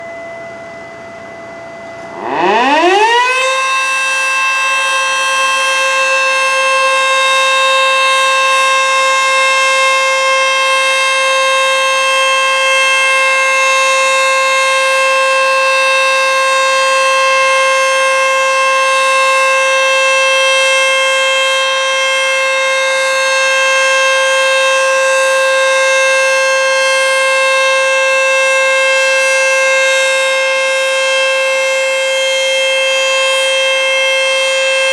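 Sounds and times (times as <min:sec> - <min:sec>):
warning siren winding up: 0:02.0 - 0:07.6.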